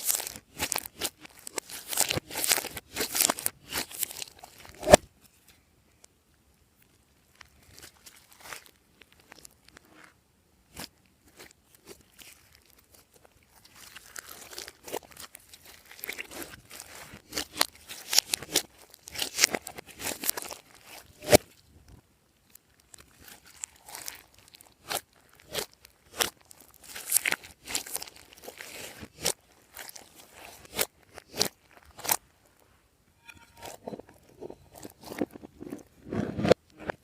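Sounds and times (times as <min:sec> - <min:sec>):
slime squished by hand: 0:00.0 - 0:05.0, 0:10.7 - 0:21.6, 0:22.8 - 0:32.2.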